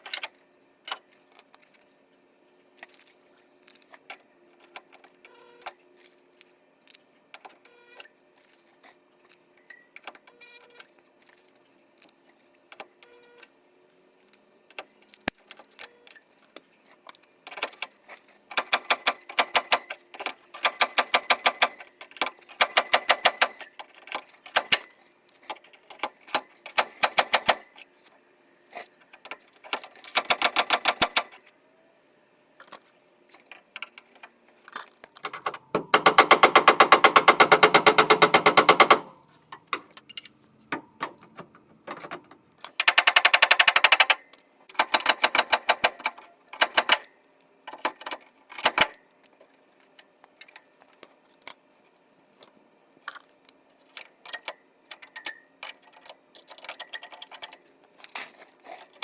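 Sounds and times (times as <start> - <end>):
rapid mechanical clicking: 18.5 - 23.7, 25.9 - 27.7, 29.7 - 31.4, 35.2 - 39.2, 42.6 - 47.1.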